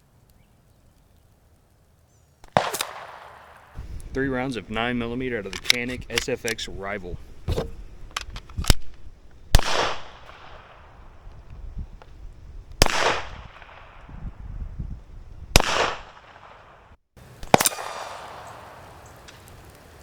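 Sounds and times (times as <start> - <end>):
sharp crack: 2.4 - 14.2, 15.5 - 19.8
pistol shots with long echo: 2.5 - 3.8, 9.5 - 10.9, 12.8 - 14.0, 15.5 - 16.8, 17.4 - 18.8.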